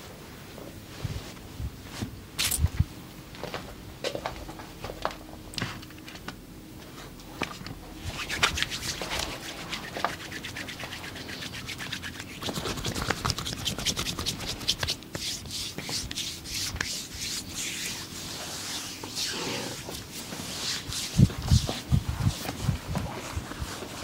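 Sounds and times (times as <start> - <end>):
hands scratching and rubbing skin: 8.0 - 24.0.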